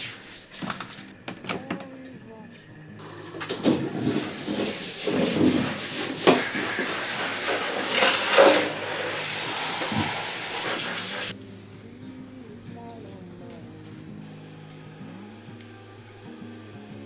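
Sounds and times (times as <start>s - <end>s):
hiss of falling water: 0.0s - 1.2s, 3.0s - 11.4s.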